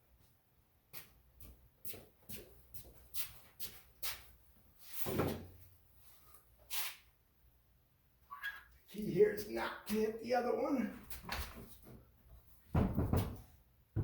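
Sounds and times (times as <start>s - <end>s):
thump: 12.7s - 14.0s
wooden frame knocking and clattering: 12.7s - 14.0s.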